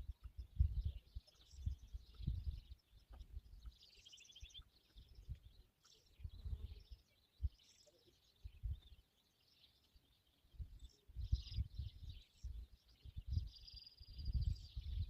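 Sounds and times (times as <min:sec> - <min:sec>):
birds chirping and singing: 0:00.0 - 0:15.0.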